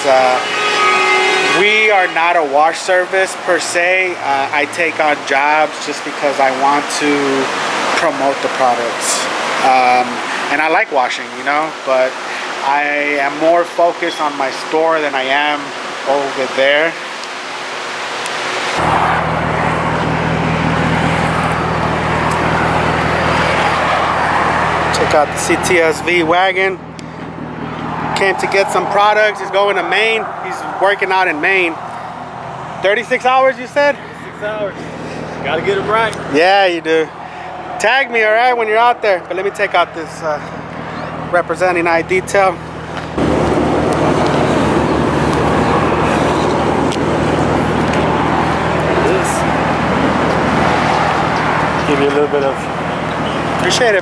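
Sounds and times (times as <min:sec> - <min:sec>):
car engine idling: 0:16.6 - 0:54.0.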